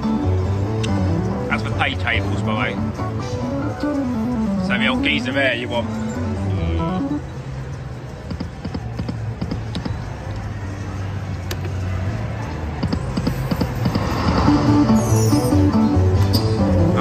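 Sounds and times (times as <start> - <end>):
slot machine tune: 2.3 - 7.4.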